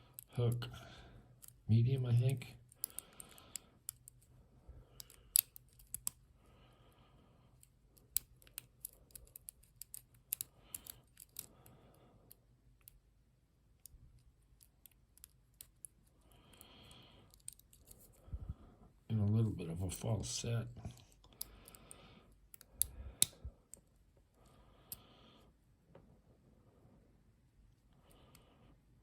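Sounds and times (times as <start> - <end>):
lock pick metallic clicks: 2.7 - 4.3, 5.0 - 6.2, 7.6 - 11.5, 17.3 - 18.1.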